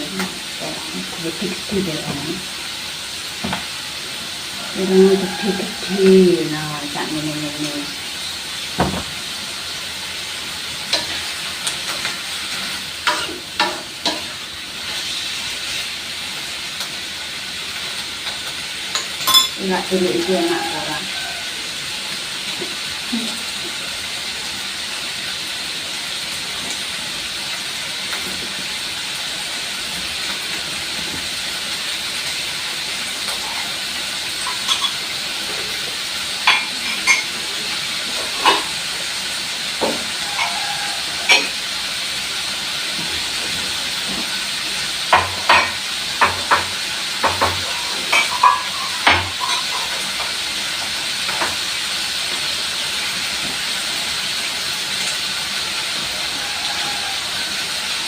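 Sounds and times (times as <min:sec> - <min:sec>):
food sizzling in hot oil: 0:00.0 - 0:58.0
spatula tapping and scraping pan: 0:45.1 - 0:50.4.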